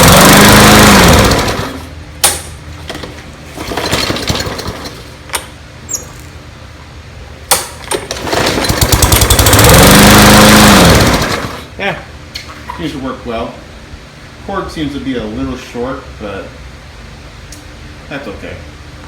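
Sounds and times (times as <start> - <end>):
lawnmower engine pull-start whir: 0.0 - 6.4, 7.5 - 11.7.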